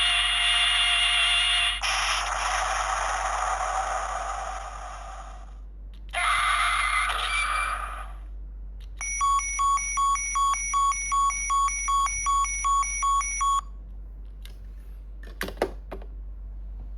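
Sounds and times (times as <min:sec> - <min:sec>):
toy sound-effect burst: 0:00.0 - 0:08.1.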